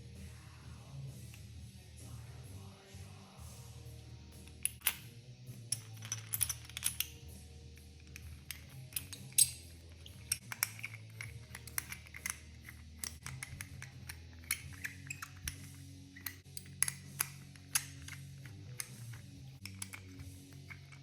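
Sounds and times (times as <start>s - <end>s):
background music: 0.0s - 21.0s
small metal parts clinking: 4.5s - 21.0s.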